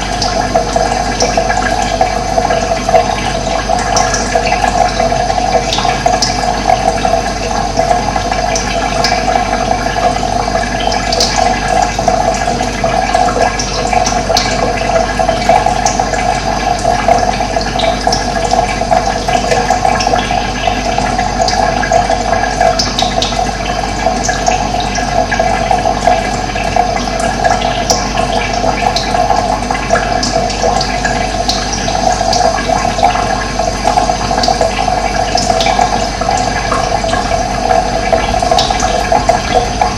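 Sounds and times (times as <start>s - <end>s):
running water rushing: 0.0s - 39.9s.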